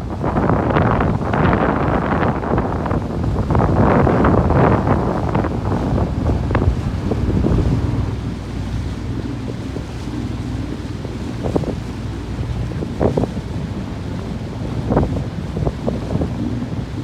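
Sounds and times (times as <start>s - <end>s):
water splashing along hull: 0.0s - 17.0s
wind buffeting microphone: 0.0s - 17.0s
low steady hum: 3.3s - 14.8s.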